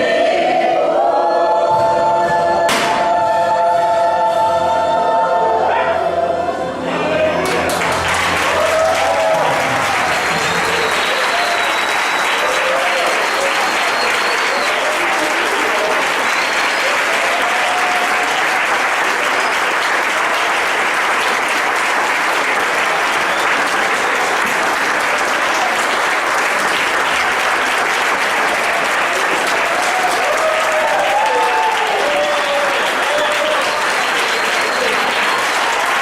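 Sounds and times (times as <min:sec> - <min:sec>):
congregation applauding: 0:07.3 - 0:36.0.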